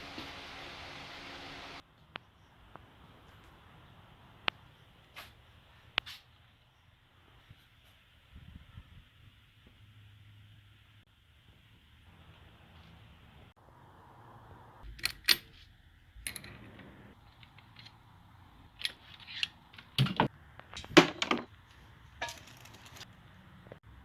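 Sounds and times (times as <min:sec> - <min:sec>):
metal tools clinking and clanking: 0:22.2 - 0:23.1.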